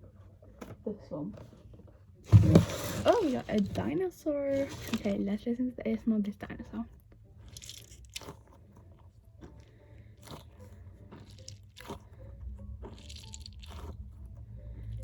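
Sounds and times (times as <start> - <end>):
squishy toy crackling: 7.0 - 15.0.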